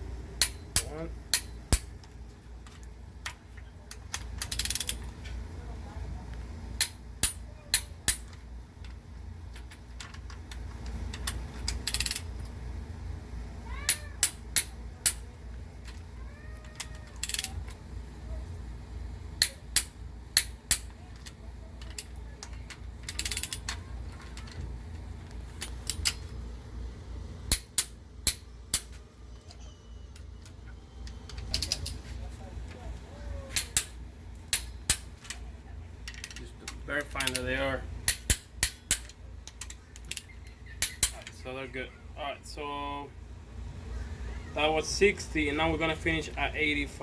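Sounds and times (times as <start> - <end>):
torque wrench clicking: 0.4 - 5.2, 6.8 - 12.6, 13.8 - 15.2, 16.6 - 17.8, 19.4 - 24.6, 25.5 - 26.3, 27.5 - 29.0, 30.1 - 32.0, 33.5 - 35.4, 36.1 - 41.3.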